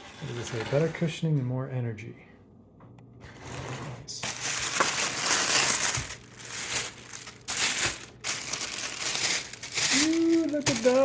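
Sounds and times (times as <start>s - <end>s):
packaging crinkling and rustling: 4.2s - 11.0s.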